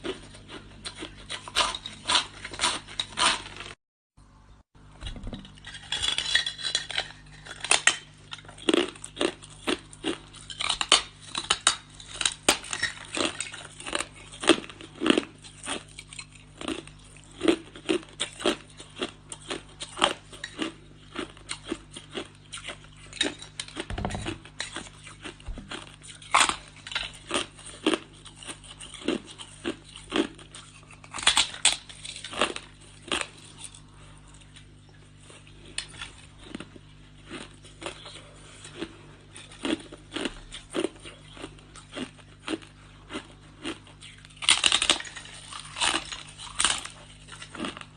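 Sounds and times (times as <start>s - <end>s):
crunching ice: 0.0s - 3.8s, 5.6s - 34.6s, 35.2s - 47.9s.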